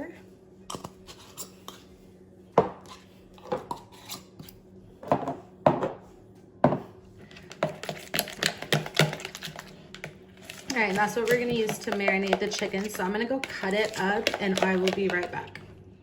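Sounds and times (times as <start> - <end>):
utensil scraping a bowl: 0.7 - 2.0, 2.8 - 4.6, 7.3 - 15.7.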